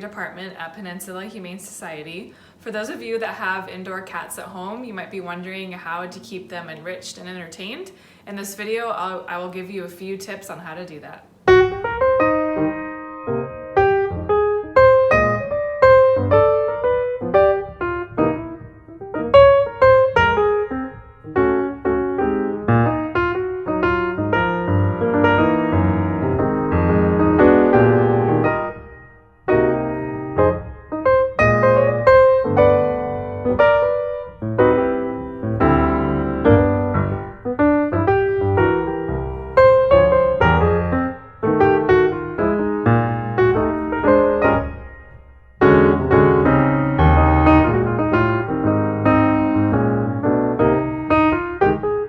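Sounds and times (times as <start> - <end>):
piano music: 11.4 - 52.0.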